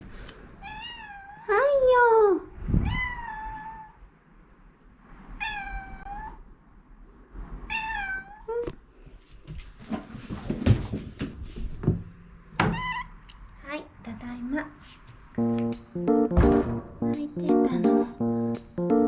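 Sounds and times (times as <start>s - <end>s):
cat meowing: 0.6s - 1.5s, 2.8s - 4.0s, 5.4s - 6.4s, 7.7s - 8.7s, 12.7s - 13.2s
light knocks and rustles: 9.2s - 12.7s.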